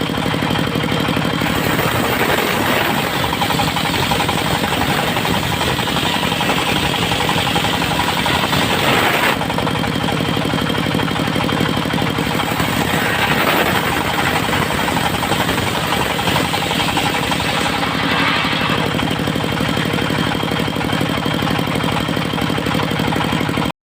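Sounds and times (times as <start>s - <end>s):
diesel engine chugging: 0.0s - 23.7s
saw blade hissing through wood: 1.4s - 9.6s, 12.2s - 20.3s.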